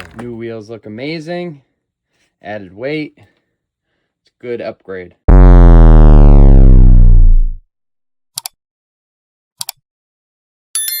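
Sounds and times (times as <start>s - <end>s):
low synthesizer tone: 5.3s - 7.6s.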